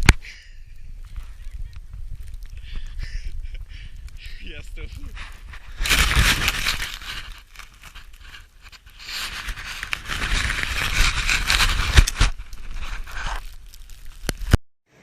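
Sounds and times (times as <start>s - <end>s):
scraping and crunching in snow: 4.5s - 14.6s.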